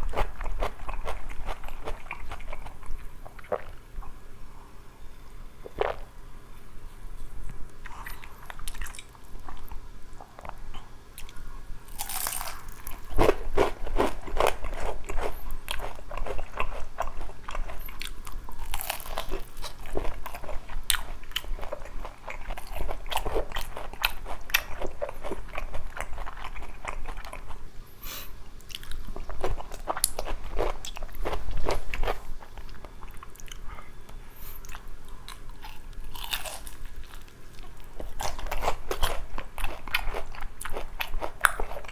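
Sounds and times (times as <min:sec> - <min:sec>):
crunching fried chicken: 0:00.0 - 0:03.7, 0:11.9 - 0:27.6, 0:34.7 - 0:41.9
wet chewing: 0:00.0 - 0:03.8, 0:10.4 - 0:27.6, 0:34.6 - 0:41.9.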